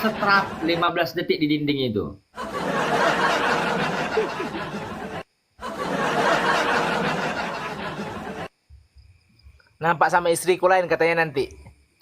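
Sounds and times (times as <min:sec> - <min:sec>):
breathy laughter: 0:02.4 - 0:08.5.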